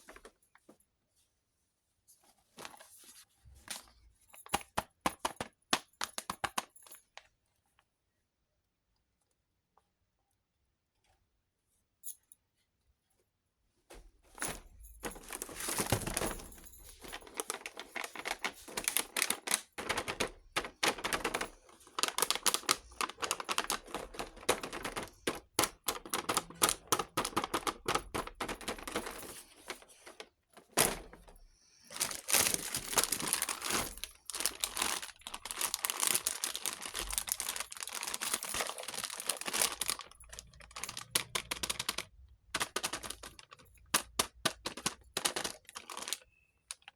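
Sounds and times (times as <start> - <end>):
packaging rustling: 14.4 - 46.9.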